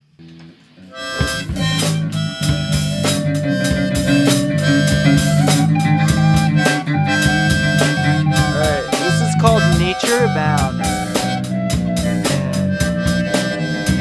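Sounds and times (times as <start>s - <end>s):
bass: 0.0s - 14.0s
guitar: 0.0s - 14.0s
sustained melody notes: 0.9s - 11.3s
drum kit: 1.2s - 14.0s.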